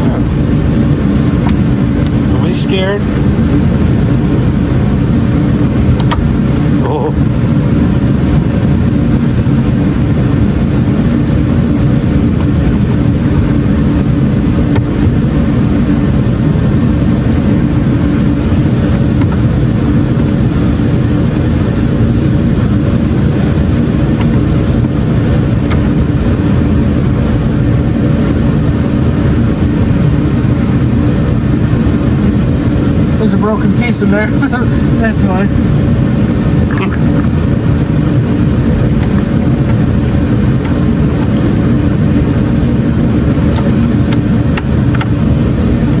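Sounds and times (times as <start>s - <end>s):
car engine running steadily: 0.0s - 46.0s.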